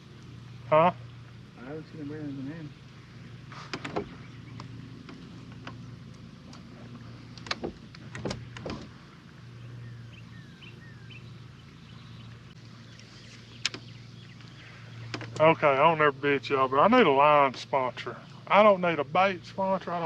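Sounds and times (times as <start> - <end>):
boat motor humming: 0.0 - 20.0.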